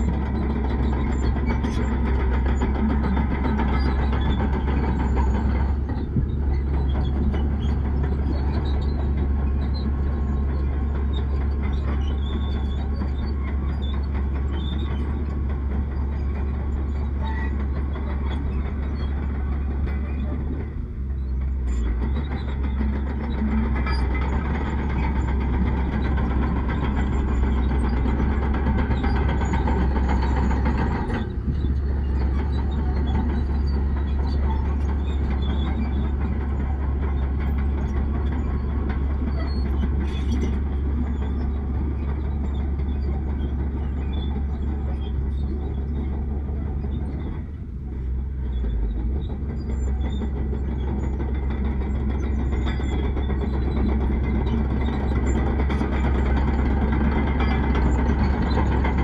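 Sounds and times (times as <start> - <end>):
diesel earthmoving machinery rumbling: 0.0 - 59.0.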